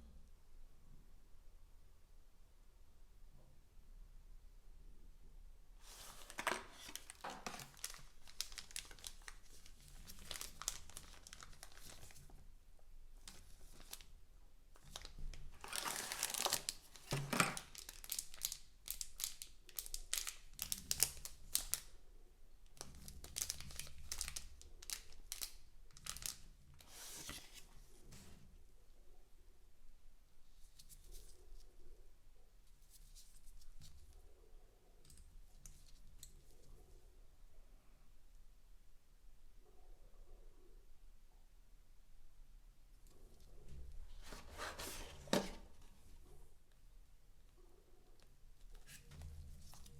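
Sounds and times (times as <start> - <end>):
packaging crinkling: 5.8 - 12.3, 13.2 - 14.1, 14.8 - 21.9, 22.8 - 27.6
packaging tearing: 5.9 - 12.2, 14.9 - 21.8.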